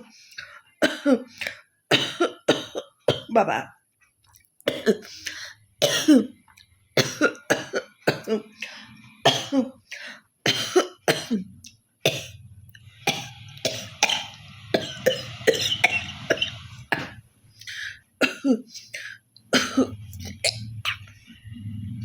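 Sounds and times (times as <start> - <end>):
woman coughing: 0.8 - 1.3, 1.9 - 3.5, 4.7 - 6.3, 7.0 - 8.6, 9.3 - 9.8, 10.5 - 11.5, 12.1 - 12.4, 13.1 - 20.7.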